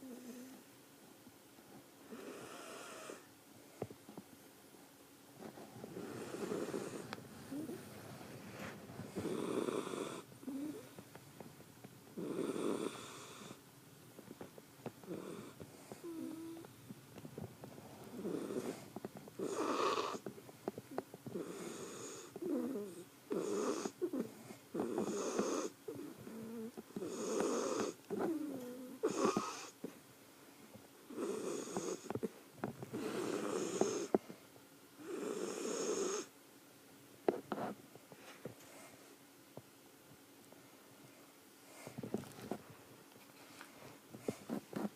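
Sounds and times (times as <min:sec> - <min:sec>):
pet snoring: 0:00.0 - 0:00.6, 0:02.1 - 0:03.3, 0:05.9 - 0:07.9, 0:09.1 - 0:10.9, 0:12.2 - 0:13.6, 0:15.0 - 0:16.7, 0:18.1 - 0:20.3, 0:21.2 - 0:29.8, 0:31.1 - 0:32.3, 0:32.9 - 0:34.2, 0:35.0 - 0:36.3.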